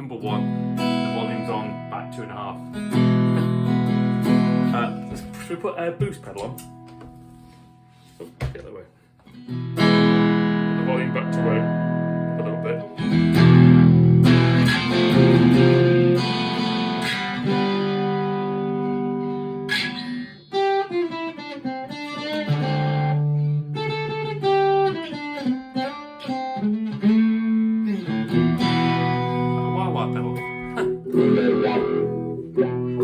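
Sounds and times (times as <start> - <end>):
electric guitar through amp: 9.5 - 33.0.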